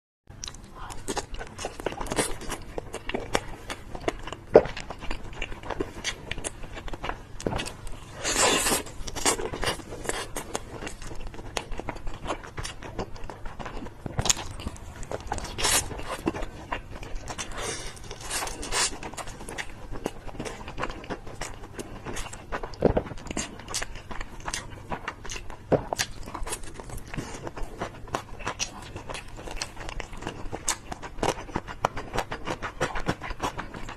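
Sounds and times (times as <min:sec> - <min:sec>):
person biting and chewing: 0:00.4 - 0:33.9.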